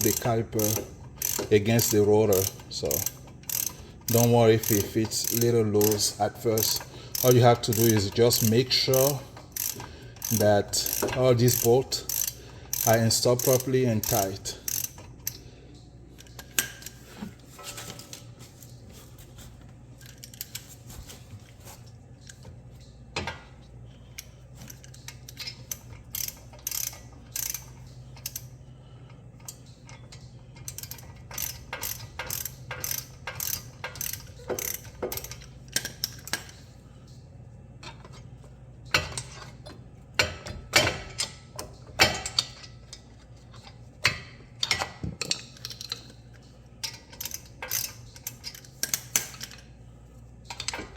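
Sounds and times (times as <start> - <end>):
socket ratchet clicking: 0.0 - 15.4, 24.7 - 28.5, 30.6 - 36.6.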